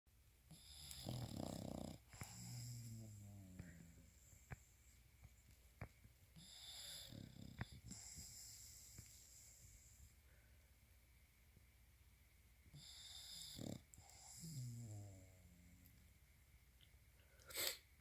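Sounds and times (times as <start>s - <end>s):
dog snoring: 0.5s - 4.6s, 6.4s - 10.0s, 12.7s - 15.8s.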